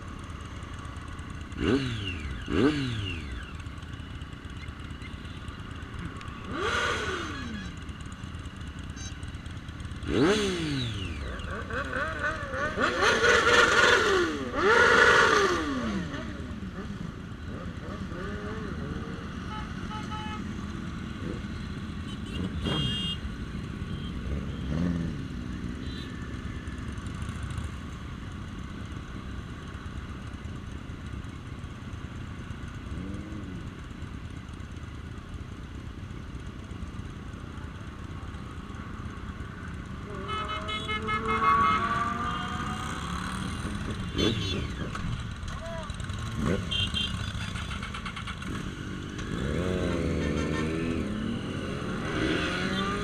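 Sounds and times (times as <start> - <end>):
road traffic: 0.0 - 53.0
short horn beeps: 22.0 - 23.2.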